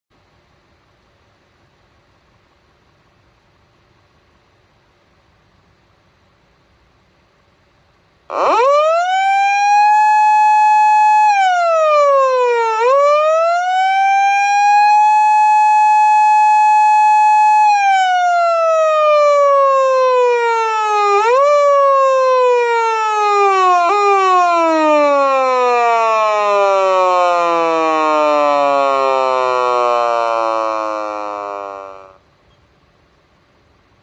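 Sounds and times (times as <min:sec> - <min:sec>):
police siren: 0:08.3 - 0:32.2.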